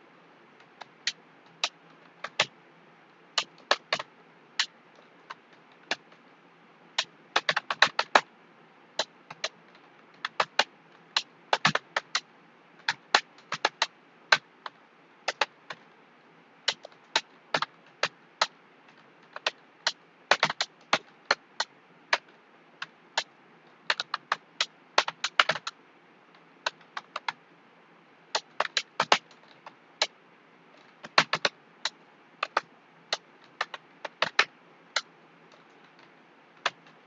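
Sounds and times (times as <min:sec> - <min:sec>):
computer keyboard keys clicking: 0:01.0 - 0:02.5, 0:07.4 - 0:08.2, 0:10.2 - 0:12.2, 0:12.8 - 0:15.8, 0:19.3 - 0:21.4, 0:25.0 - 0:25.7, 0:31.0 - 0:35.7.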